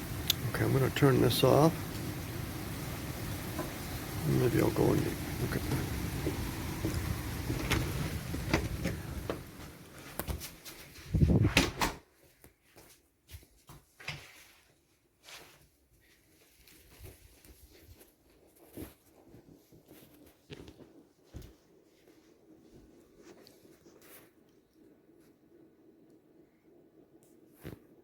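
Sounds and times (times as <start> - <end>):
rain: 0.0 - 10.6
wind: 0.0 - 12.0.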